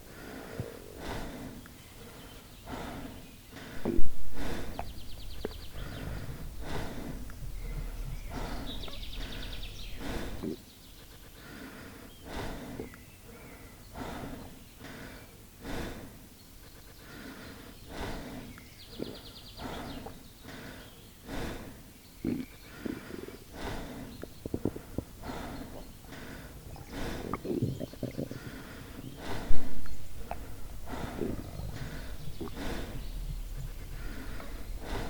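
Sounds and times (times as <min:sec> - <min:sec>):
stomach growling: 0:03.7 - 0:10.6, 0:22.2 - 0:35.0.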